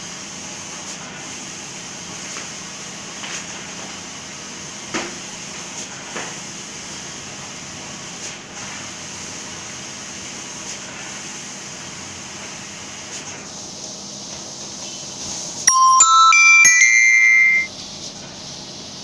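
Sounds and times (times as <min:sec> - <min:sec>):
electronic chime melody: 0:15.7 - 0:17.7.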